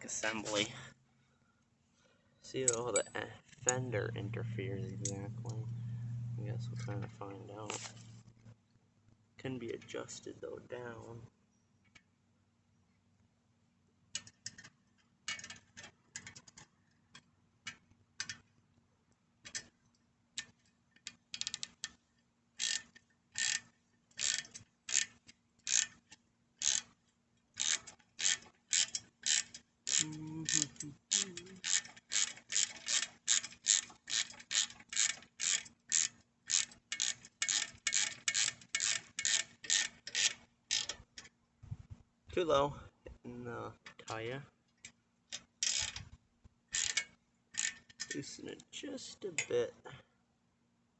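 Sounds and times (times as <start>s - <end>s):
ratchet wrench clicking: 20.4s - 22.0s, 22.6s - 26.0s, 26.6s - 27.0s, 27.6s - 41.3s, 45.3s - 46.0s, 46.7s - 48.2s.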